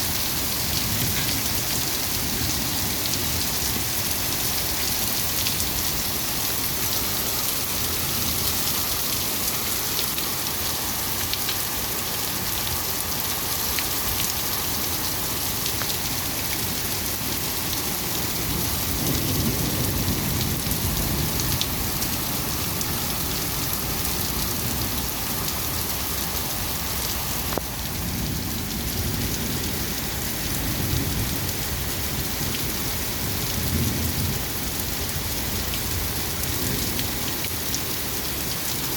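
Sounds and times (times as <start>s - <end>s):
heavy rain falling: 0.0s - 38.9s
low rumbles of thunder: 18.2s - 22.9s.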